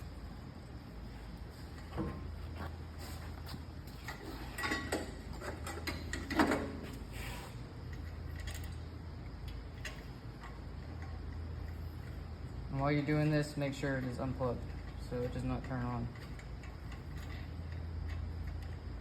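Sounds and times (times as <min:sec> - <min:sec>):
metal clicks and rattles: 0:03.9 - 0:06.8, 0:07.9 - 0:12.2, 0:14.0 - 0:19.0.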